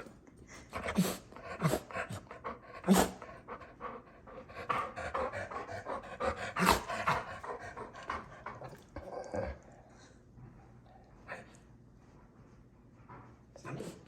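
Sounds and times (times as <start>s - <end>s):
dog panting: 0.5s - 9.0s.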